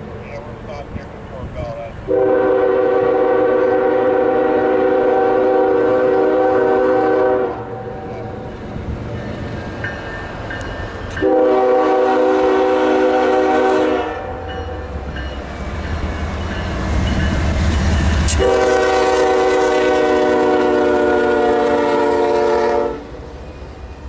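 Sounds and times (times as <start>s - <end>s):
train rumbling: 0.0s - 24.0s
locomotive air horn blasts: 2.1s - 8.1s, 11.2s - 14.5s, 18.3s - 23.2s.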